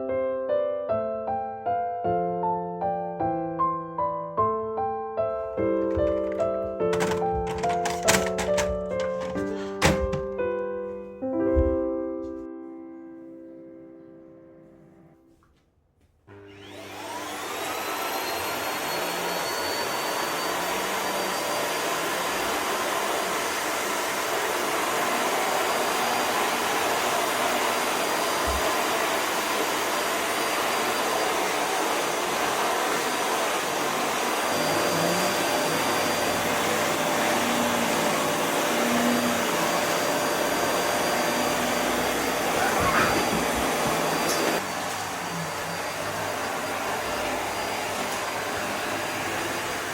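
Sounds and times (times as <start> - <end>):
vacuum cleaner motor whine: 5.5 - 10.4, 16.3 - 49.9.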